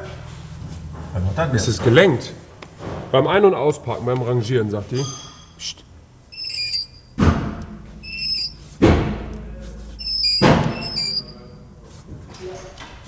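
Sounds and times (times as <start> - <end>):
brake squealing: 4.9 - 7.2, 7.8 - 8.8, 9.4 - 12.1
heavy thuds: 7.1 - 13.0.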